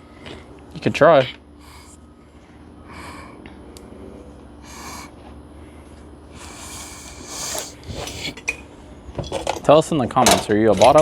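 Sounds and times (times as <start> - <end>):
person breathing out hard: 1.6 - 8.4.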